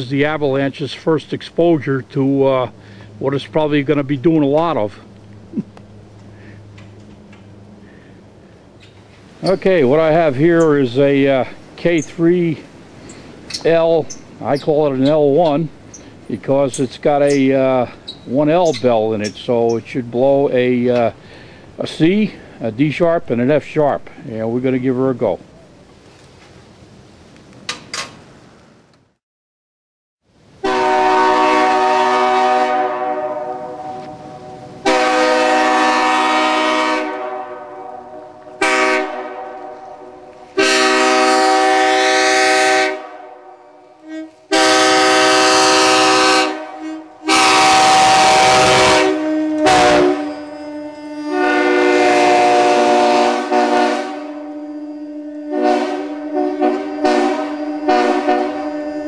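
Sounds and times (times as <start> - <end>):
locomotive air horn blasts: 30.6 - 59.0.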